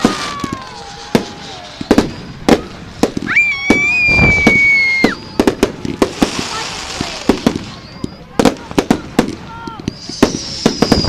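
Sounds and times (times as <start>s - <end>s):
firework bangs: 0.0s - 11.0s
whistling firework: 0.0s - 11.0s.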